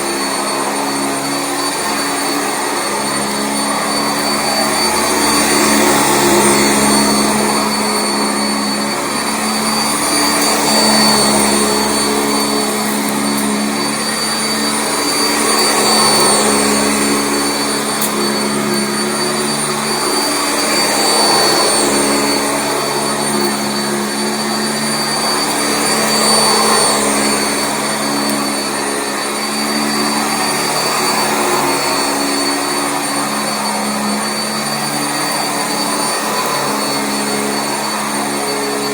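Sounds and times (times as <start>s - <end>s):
vacuum cleaner motor drone: 0.0s - 38.9s.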